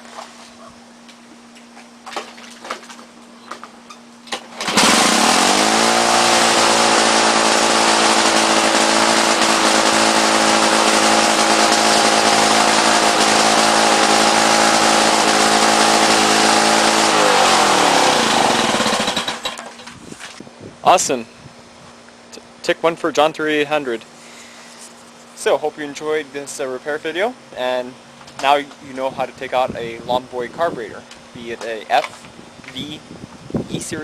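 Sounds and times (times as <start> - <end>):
lawn mower engine running: 4.2 - 20.3.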